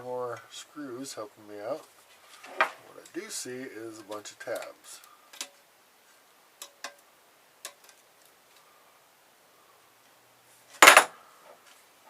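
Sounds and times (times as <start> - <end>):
small metal clicks: 6.6 - 8.6.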